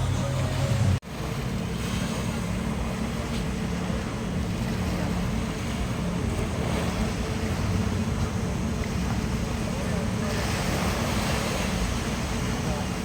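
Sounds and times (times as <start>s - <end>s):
boat engine running: 0.0s - 13.0s
water rushing: 0.0s - 13.0s
wind: 0.0s - 13.0s.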